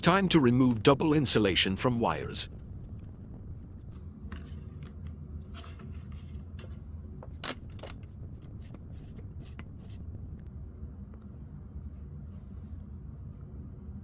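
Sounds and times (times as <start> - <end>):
steady low hum: 0.0 - 14.0
insulation stripped off cable: 2.5 - 10.5.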